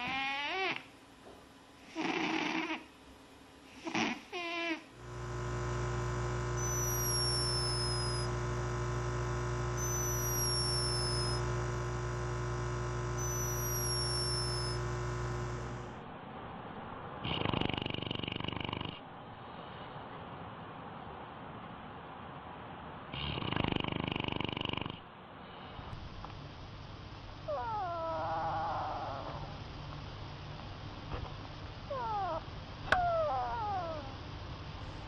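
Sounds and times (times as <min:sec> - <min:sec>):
purr-like drone: 0:05.0 - 0:16.0, 0:17.2 - 0:19.0, 0:23.1 - 0:25.0, 0:27.4 - 0:29.7
faint high nose whistle: 0:06.5 - 0:08.4, 0:09.1 - 0:11.6, 0:12.6 - 0:15.6
cat meowing: 0:27.5 - 0:29.4, 0:31.9 - 0:34.1.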